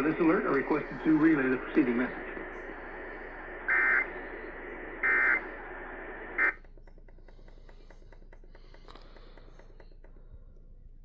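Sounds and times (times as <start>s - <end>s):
am radio hiss: 0.0s - 6.6s.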